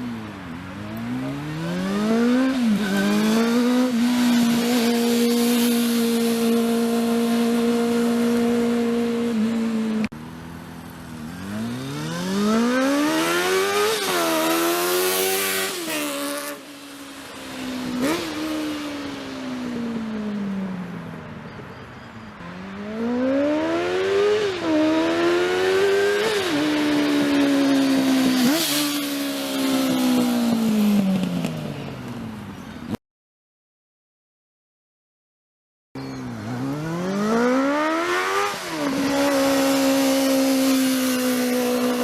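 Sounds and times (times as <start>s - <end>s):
motorcycle engine revving loudly: 1.0s - 9.8s, 11.3s - 16.6s, 17.8s - 19.1s, 22.5s - 31.3s, 36.2s - 42.0s.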